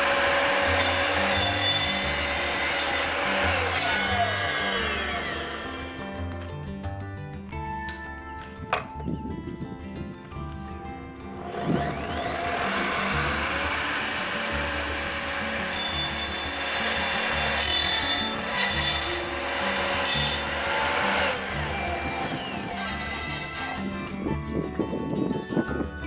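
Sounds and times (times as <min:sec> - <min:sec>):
saw blade cutting wood: 0:00.0 - 0:06.4, 0:11.4 - 0:23.9
miter saw motor whining: 0:00.0 - 0:06.5, 0:11.4 - 0:23.9.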